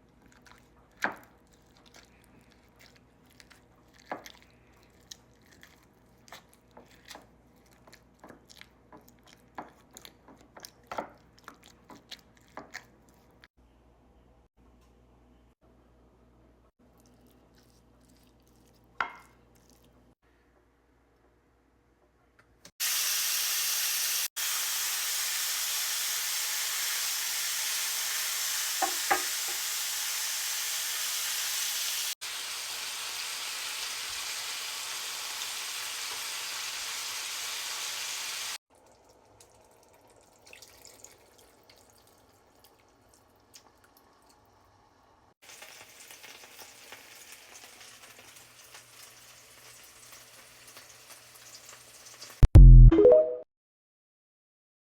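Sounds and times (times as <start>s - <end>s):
meat sizzling in a pan: 22.8s - 38.6s, 45.4s - 52.4s.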